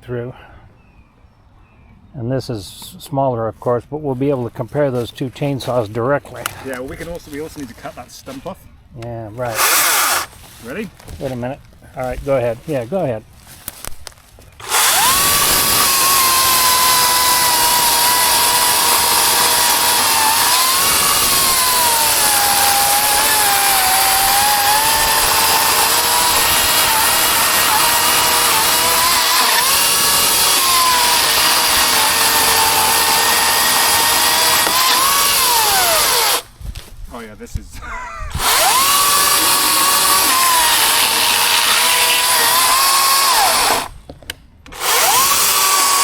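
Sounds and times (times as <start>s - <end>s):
electric chainsaw cutting wood: 9.4s - 10.4s, 14.6s - 36.5s, 38.4s - 43.9s, 44.7s - 46.0s.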